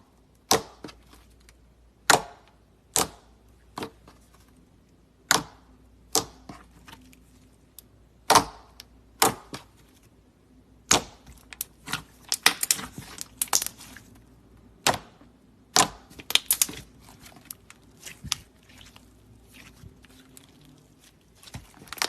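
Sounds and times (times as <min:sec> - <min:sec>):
slime clicking and popping: 0:10.8 - 0:13.9, 0:15.7 - 0:18.5.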